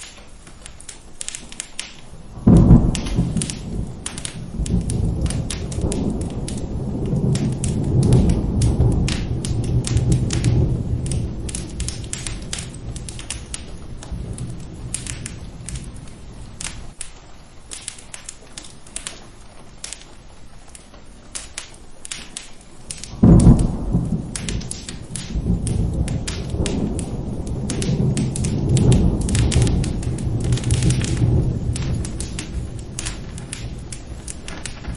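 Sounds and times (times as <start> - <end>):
fireplace crackling: 0.0 - 34.9
rain: 0.0 - 34.9
thunder rumbling: 2.1 - 20.7, 22.7 - 34.9
loud thunderclap: 2.4 - 17.0, 23.1 - 34.9.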